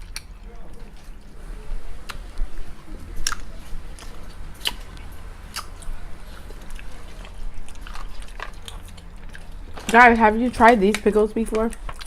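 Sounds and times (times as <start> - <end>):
person chewing candy: 3.1 - 10.0, 10.6 - 12.0.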